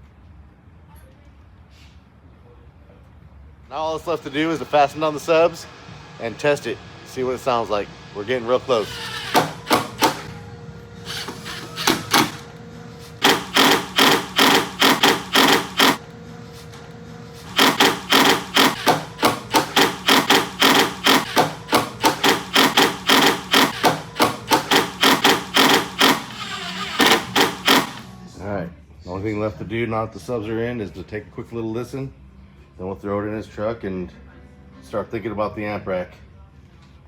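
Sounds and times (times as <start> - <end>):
rapid knocking on wood: 17.5 - 26.3.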